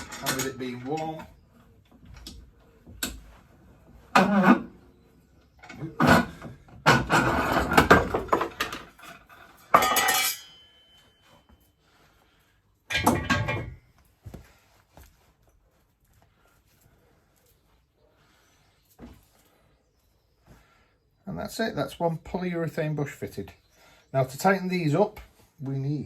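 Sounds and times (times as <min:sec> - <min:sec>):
metal tools clinking and scraping: 0:00.0 - 0:03.3, 0:05.6 - 0:11.6, 0:12.9 - 0:14.0
metal piece ringing: 0:09.7 - 0:11.2.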